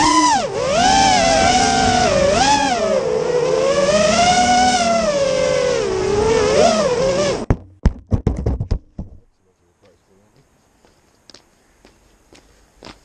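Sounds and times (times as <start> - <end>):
quadcopter motors whining: 0.0 - 7.5.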